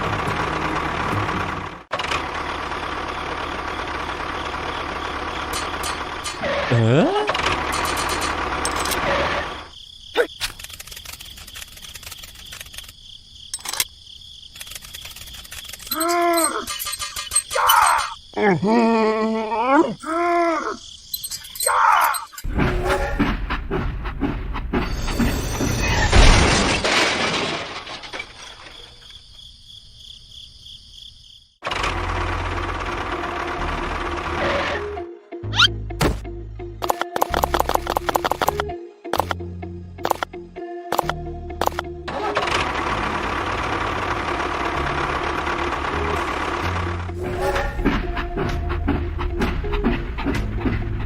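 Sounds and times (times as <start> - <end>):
insect chirping: 7.7 - 22.5, 28.1 - 31.6
loud crash: 25.6 - 28.3
clicks: 36.8 - 39.4, 40.0 - 40.3, 40.9 - 41.9.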